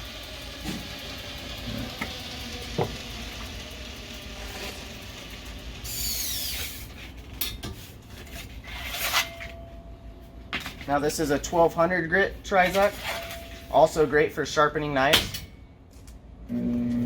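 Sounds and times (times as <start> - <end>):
belt grinder grinding steel: 0.0 - 7.0
machine whine winding down: 0.0 - 7.1.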